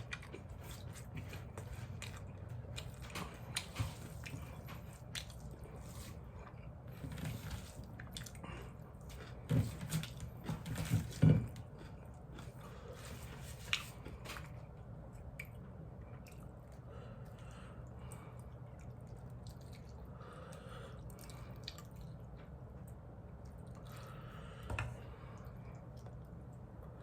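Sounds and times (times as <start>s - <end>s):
low steady hum: 0.0s - 27.0s
people chewing noodles: 0.0s - 27.0s.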